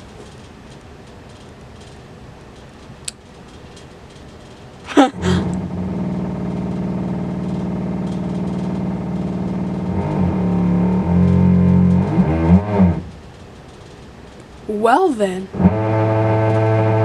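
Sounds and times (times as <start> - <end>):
droning hum from plumbing: 4.4 - 13.6.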